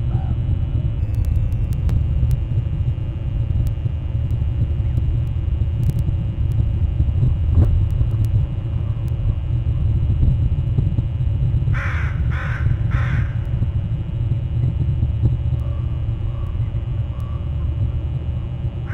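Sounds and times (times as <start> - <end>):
low rumble: 0.0 - 18.9
crow cawing: 11.8 - 13.5.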